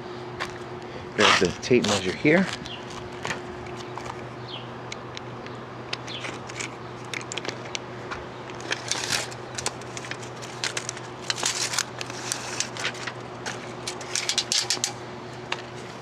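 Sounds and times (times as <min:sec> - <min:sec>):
steady low hum: 0:00.0 - 0:16.0
tape measure handling clicks: 0:13.8 - 0:15.0.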